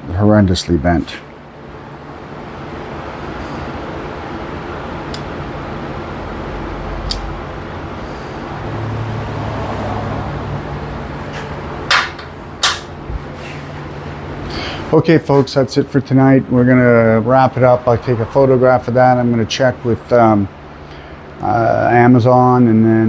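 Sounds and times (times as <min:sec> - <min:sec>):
mechanical noise with low hum: 0:00.0 - 0:23.0
loud knocks: 0:11.9 - 0:13.6.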